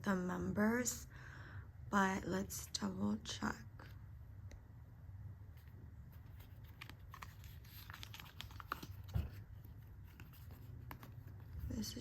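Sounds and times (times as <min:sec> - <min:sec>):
plastic packaging crinkling: 0:06.2 - 0:11.6.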